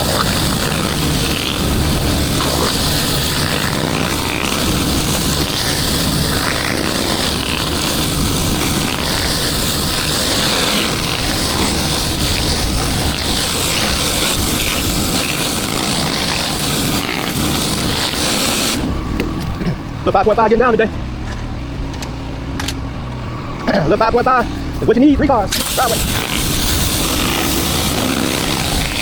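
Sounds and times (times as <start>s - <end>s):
high-pressure water spray hiss: 0.0s - 19.0s, 25.0s - 29.0s
pressure washer motor droning: 0.0s - 29.0s.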